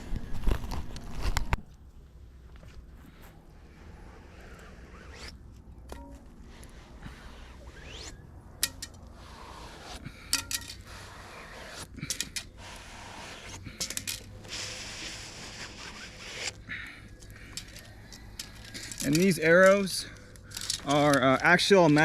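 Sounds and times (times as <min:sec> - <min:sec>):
metallic clicks and clinks: 0:10.3 - 0:10.8, 0:12.0 - 0:12.5, 0:13.8 - 0:14.4, 0:17.2 - 0:22.0.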